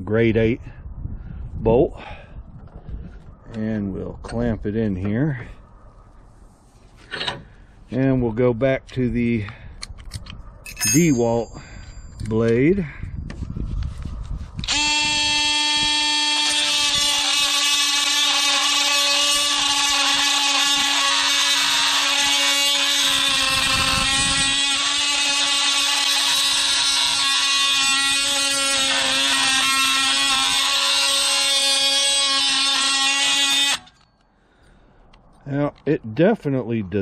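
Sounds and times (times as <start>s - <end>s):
oscillating multi-tool cutting bolt: 10.1s - 12.4s, 14.6s - 34.2s.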